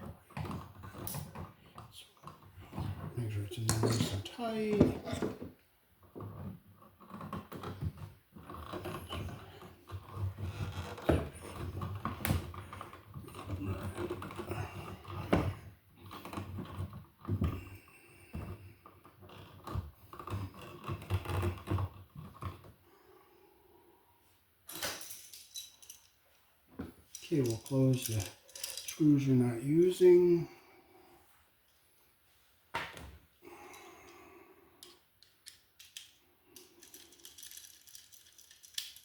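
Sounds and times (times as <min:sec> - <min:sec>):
hands handling electrical wires: 0:24.7 - 0:29.2, 0:34.8 - 0:39.0.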